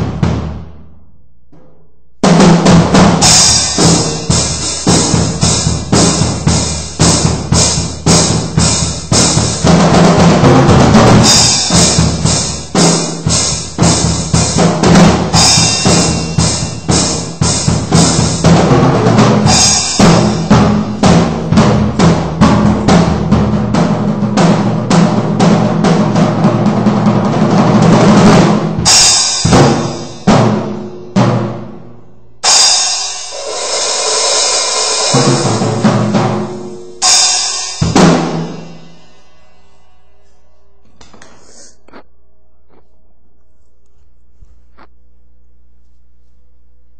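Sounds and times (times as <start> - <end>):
drum kit playing: 0.0 - 39.9
cymbal crash: 32.4 - 35.8.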